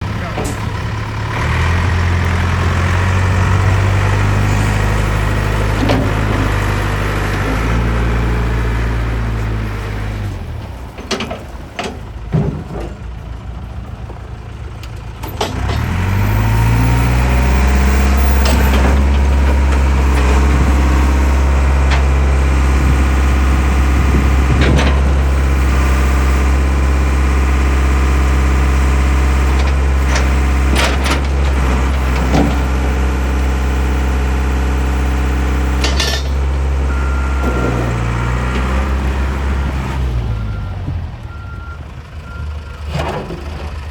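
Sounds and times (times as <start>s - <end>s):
diesel engine running: 0.0s - 43.9s
metal clanks: 0.2s - 0.8s, 35.7s - 36.6s
engine starting whine: 15.2s - 23.4s.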